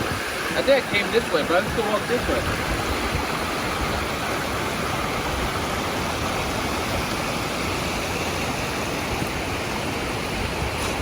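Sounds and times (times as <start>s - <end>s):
whitewater rushing: 0.0s - 11.0s.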